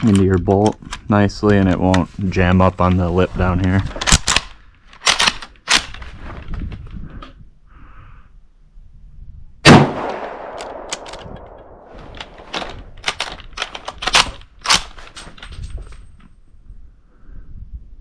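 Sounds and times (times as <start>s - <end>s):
rifle bolt metallic clacks: 4.0s - 6.0s, 9.7s - 16.3s
loud rifle shot with echo: 9.6s - 11.9s.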